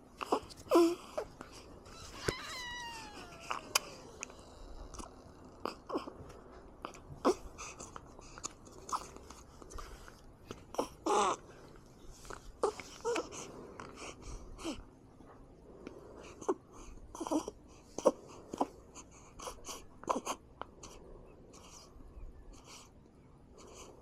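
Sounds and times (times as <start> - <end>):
baby whimpering: 0.2 - 6.1.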